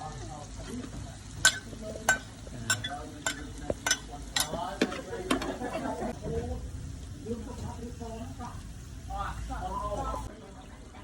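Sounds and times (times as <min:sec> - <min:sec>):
eels sizzling in a pan: 0:00.0 - 0:11.0
utensil scraping a pan: 0:01.4 - 0:06.1.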